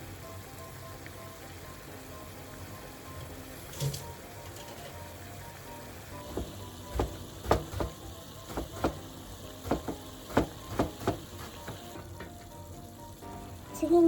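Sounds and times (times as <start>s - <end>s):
meat frying in a pan: 0.0s - 14.0s
utensil knocking against pan: 6.2s - 12.0s.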